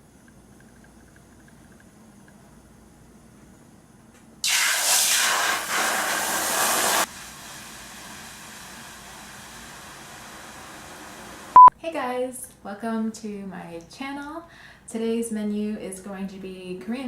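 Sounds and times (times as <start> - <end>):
loud even hiss: 4.4 - 11.6.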